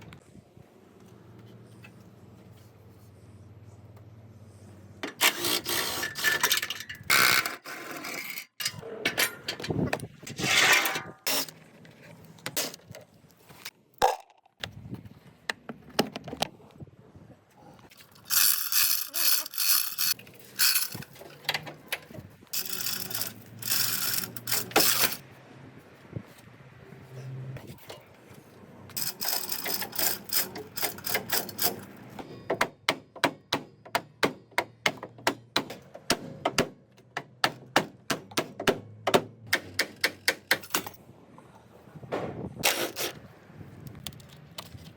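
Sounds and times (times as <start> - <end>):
hand tool scraping: 17.9 - 21.3, 22.6 - 25.2, 42.6 - 43.2.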